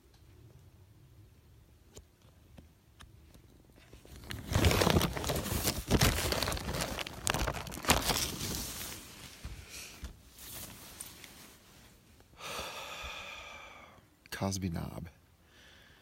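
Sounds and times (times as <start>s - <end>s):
material crinkling and rustling: 3.2s - 12.2s.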